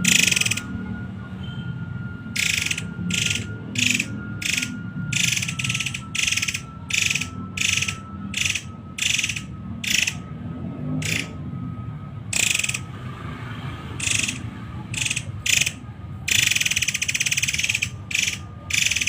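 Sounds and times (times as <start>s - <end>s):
bird harsh rasping calls: 0.0s - 0.7s, 2.4s - 10.2s, 11.0s - 11.4s, 12.3s - 12.9s, 14.0s - 19.0s.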